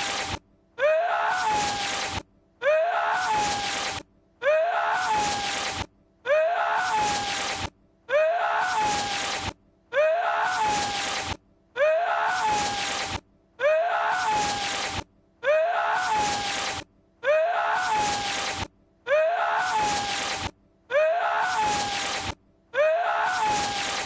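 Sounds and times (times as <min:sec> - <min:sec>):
man's sneeze-like cry: 0:00.8 - 0:02.0, 0:02.6 - 0:05.7, 0:06.3 - 0:07.5, 0:08.1 - 0:09.3, 0:10.0 - 0:11.1, 0:11.8 - 0:13.0, 0:13.6 - 0:14.8, 0:15.4 - 0:16.6, 0:17.2 - 0:18.5, 0:19.1 - 0:20.3, 0:20.9 - 0:22.2, 0:22.8 - 0:23.9.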